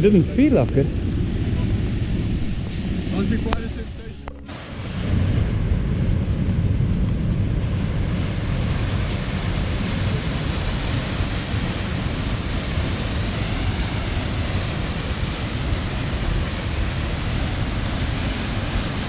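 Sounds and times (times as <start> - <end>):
rushing river water: 4.4 - 6.6, 7.4 - 19.0.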